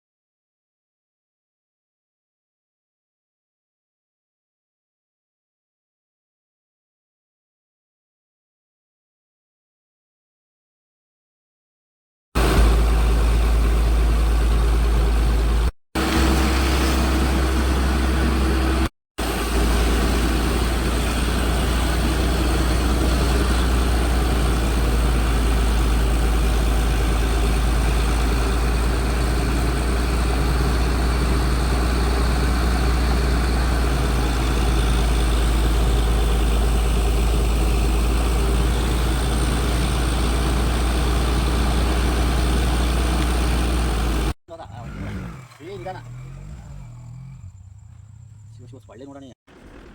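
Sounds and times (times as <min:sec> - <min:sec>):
air compressor engine humming: 0:12.4 - 0:44.4.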